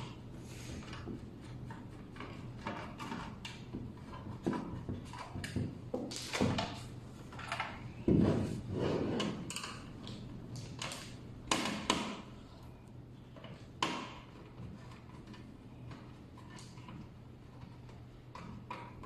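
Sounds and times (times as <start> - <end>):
scraping slide: 8.4 - 9.4.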